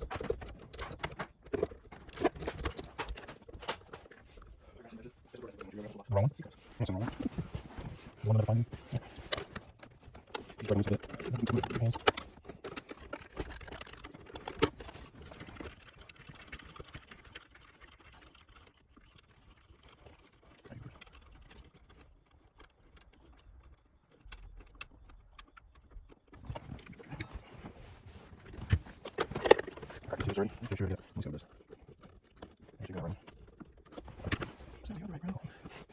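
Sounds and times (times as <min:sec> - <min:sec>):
hand tools clicking and rattling: 0:00.0 - 0:06.0, 0:06.6 - 0:16.9, 0:26.4 - 0:34.8.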